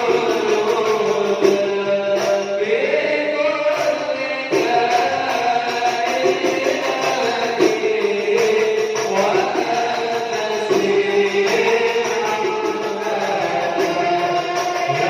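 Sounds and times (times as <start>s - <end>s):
frame drum with jingles: 3.8s - 15.0s.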